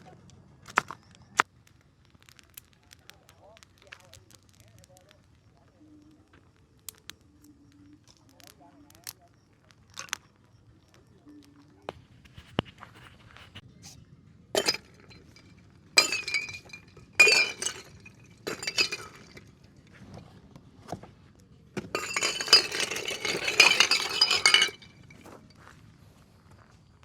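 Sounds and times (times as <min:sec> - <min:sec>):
hard objects clinking and rattling: 0:14.6 - 0:19.7, 0:21.8 - 0:25.6.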